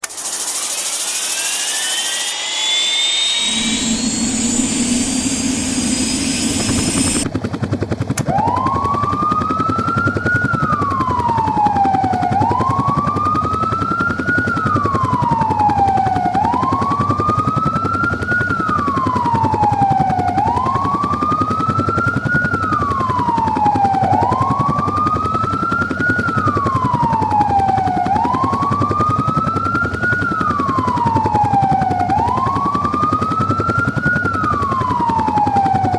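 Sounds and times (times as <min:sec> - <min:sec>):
siren wailing: 0:00.0 - 0:07.4, 0:08.3 - 0:35.9
high turbine whine: 0:00.0 - 0:08.0
helicopter rotor chop: 0:00.0 - 0:35.9.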